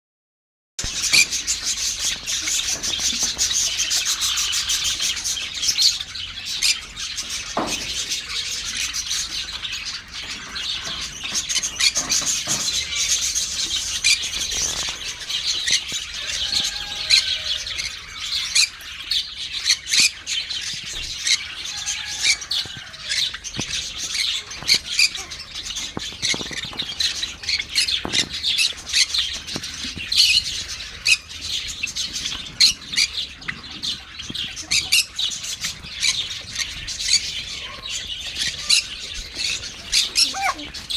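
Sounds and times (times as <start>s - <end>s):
flock of sparrows chirping: 0.8s - 40.9s.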